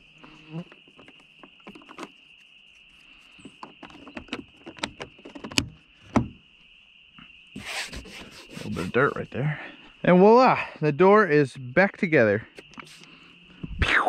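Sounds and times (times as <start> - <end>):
rubbing sound: 1.7 - 3.5, 7.6 - 9.3, 12.8 - 13.1.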